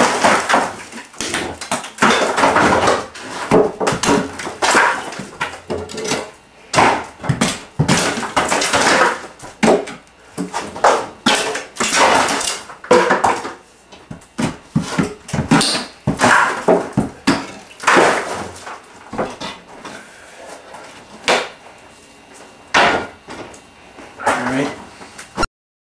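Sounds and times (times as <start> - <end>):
plaster chunks clattering down: 0.0 - 19.6
plaster cracking and crunching: 0.0 - 19.6.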